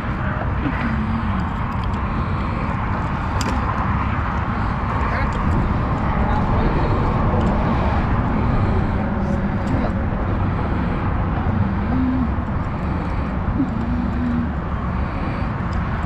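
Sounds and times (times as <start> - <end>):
outdoor rumble and hiss: 0.0 - 16.0
faint short hums: 11.5 - 12.5, 13.5 - 14.7.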